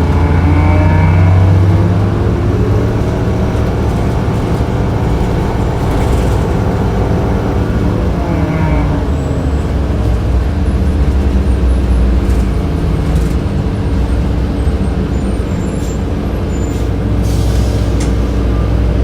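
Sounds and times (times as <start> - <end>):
bus engine drone: 0.0 - 19.0.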